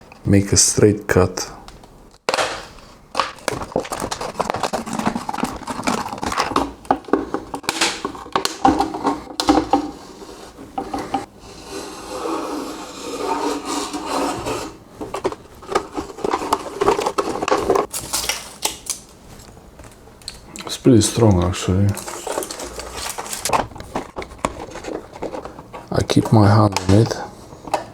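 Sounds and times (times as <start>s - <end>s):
plastic crinkling: 2.1s - 9.6s, 15.0s - 20.5s, 21.3s - 27.3s
knife cutting plastic bottle: 2.3s - 10.1s.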